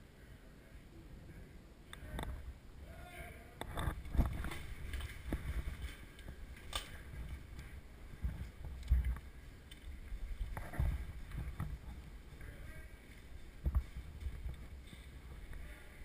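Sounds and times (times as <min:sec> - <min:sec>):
microphone handling noise: 0:03.6 - 0:12.6, 0:13.2 - 0:15.8
wind rumble on microphone: 0:03.6 - 0:16.0.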